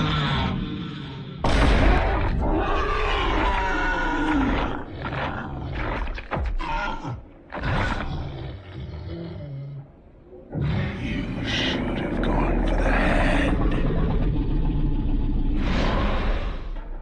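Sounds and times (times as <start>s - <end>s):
monster roaring: 0.0s - 9.7s, 10.5s - 17.0s.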